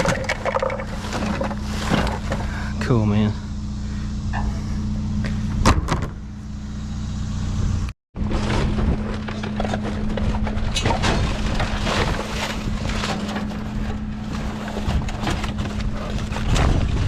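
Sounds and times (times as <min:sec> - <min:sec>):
knocks and rattles: 0:00.0 - 0:02.5
vehicle engine humming: 0:00.0 - 0:17.0.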